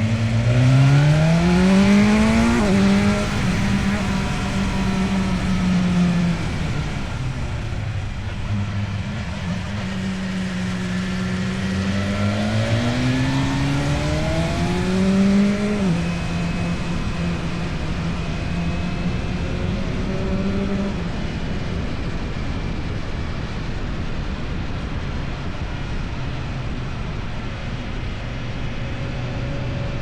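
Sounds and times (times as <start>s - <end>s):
motorcycle engine revving: 0.0s - 22.8s.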